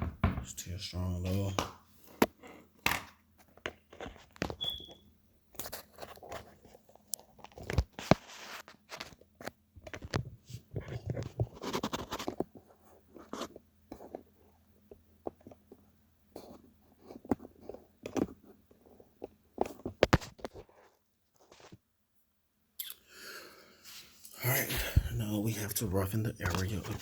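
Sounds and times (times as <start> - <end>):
short high squeak: 4.6 - 5.0.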